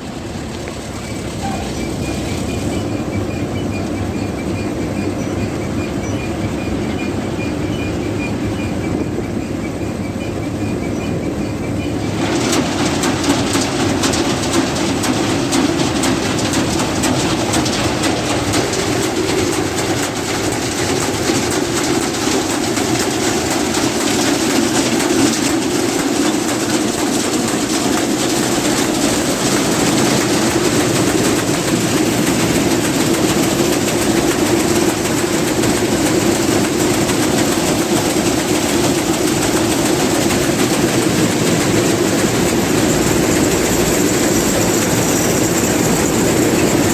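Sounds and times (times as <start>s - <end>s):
combine harvester clattering: 0.0s - 46.9s.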